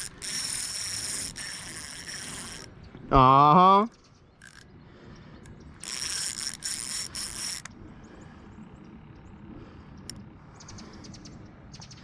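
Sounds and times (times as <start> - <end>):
fishing reel ratcheting and whirring: 0.0 - 2.8, 4.3 - 4.7, 5.4 - 7.8, 10.0 - 10.3.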